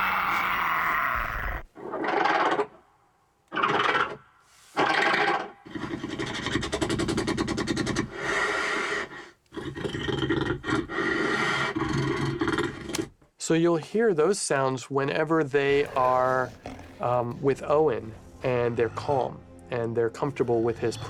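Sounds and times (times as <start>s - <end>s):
long rattling creature call: 0.0s - 2.7s, 15.7s - 17.4s
dinosaur calls: 0.0s - 2.8s, 15.7s - 17.6s.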